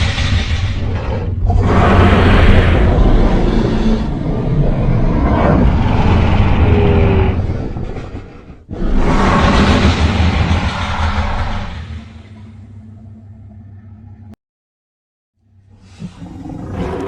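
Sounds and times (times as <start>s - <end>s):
dinosaur roar: 0.8s - 12.1s, 16.0s - 17.0s.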